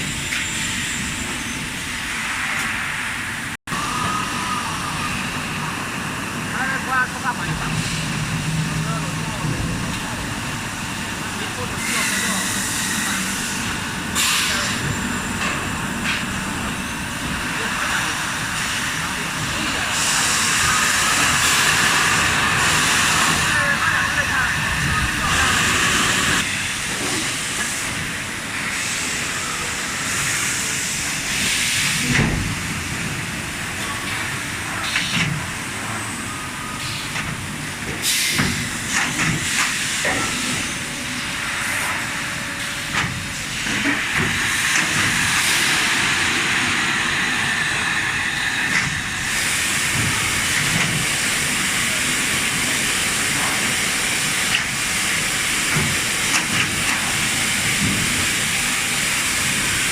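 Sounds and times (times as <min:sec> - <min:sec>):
factory machinery hissing: 0:00.0 - 0:59.9.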